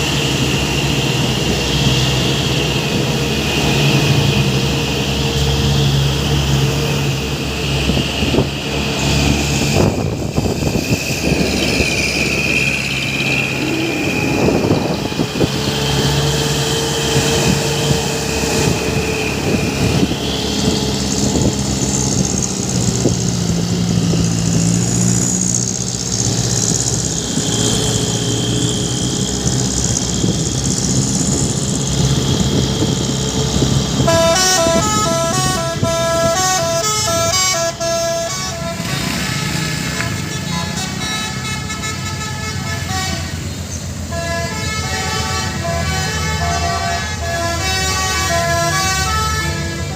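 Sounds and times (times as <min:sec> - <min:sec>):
truck and traffic noise: 0:00.0 - 0:49.9
musical air horn tune: 0:33.9 - 0:43.5, 0:44.1 - 0:49.9.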